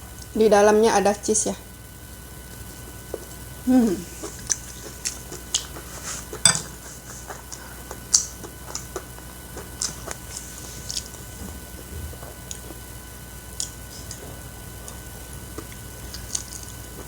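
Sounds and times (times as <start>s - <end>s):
wet chewing smacks: 2.5s - 12.9s, 13.6s - 17.0s
person humming mm: 3.6s - 4.3s.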